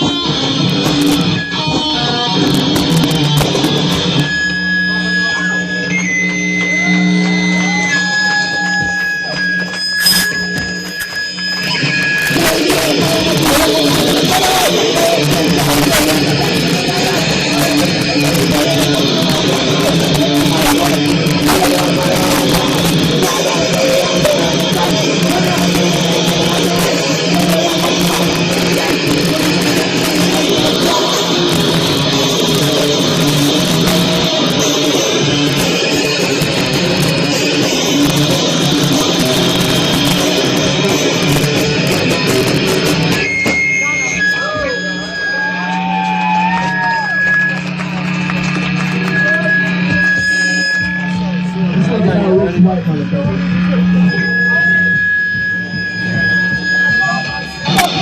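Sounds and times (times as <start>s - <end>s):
live band playing heavy rock: 0.0s - 58.0s.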